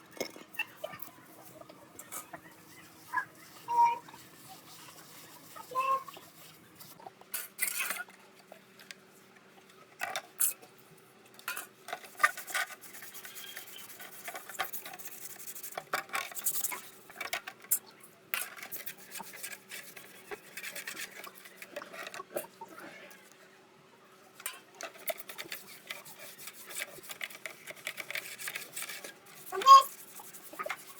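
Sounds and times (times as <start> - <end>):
hand tools being handled: 24.4 - 30.9.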